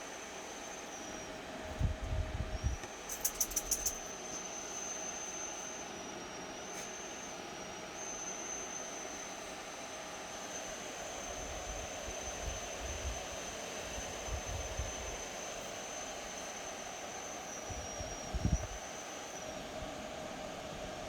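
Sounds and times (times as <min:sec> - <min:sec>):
fan heater high-pitched whistle: 0:00.0 - 0:21.0.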